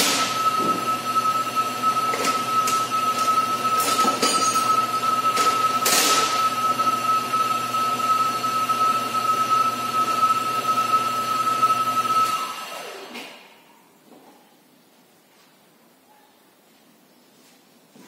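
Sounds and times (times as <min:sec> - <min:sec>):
electric impact wrench whining: 0:00.0 - 0:13.6.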